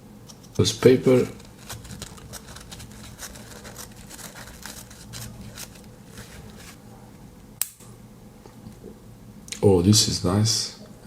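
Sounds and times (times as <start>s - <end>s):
small scissors snipping paper: 1.4s - 5.9s.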